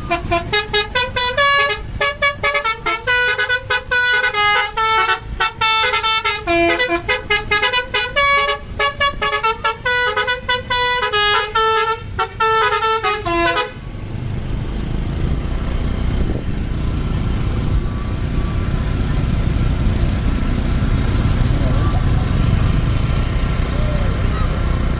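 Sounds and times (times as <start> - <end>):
multi-tone bus horn melody: 0.0 - 13.9
low engine rumble: 0.0 - 24.9.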